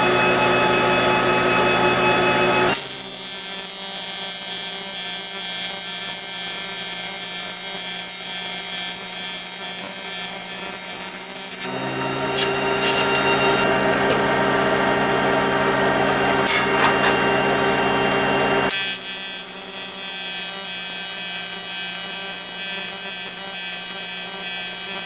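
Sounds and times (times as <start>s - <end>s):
welding arc buzzing and hissing: 1.2s - 13.7s, 18.0s - 25.0s.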